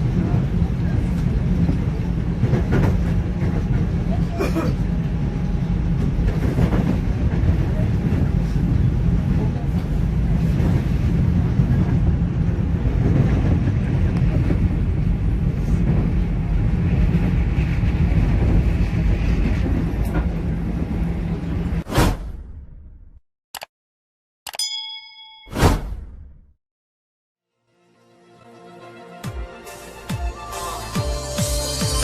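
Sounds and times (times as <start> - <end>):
train rumbling over bridge: 0.0 - 21.8.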